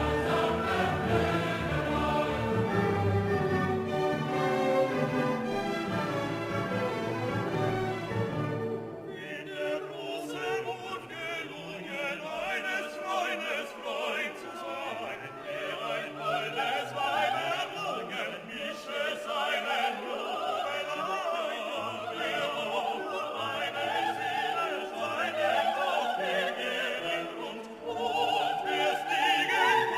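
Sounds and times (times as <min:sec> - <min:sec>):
operatic singer with orchestra: 0:00.0 - 0:29.9.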